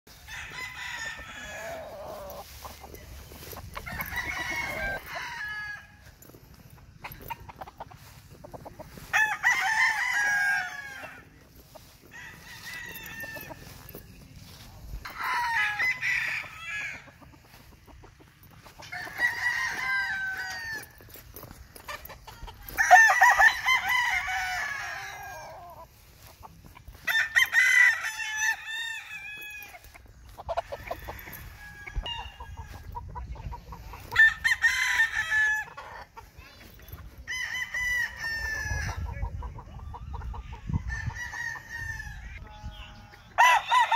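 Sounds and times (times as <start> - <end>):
young roosters crowing: 0.1 - 36.3, 36.9 - 43.9.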